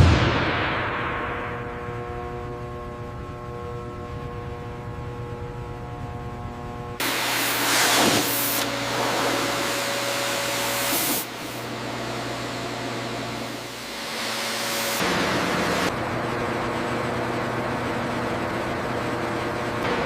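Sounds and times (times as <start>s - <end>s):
low hum: 0.0s - 20.0s
machine hum with held tones: 0.0s - 20.0s
loud steady hiss: 7.0s - 15.9s.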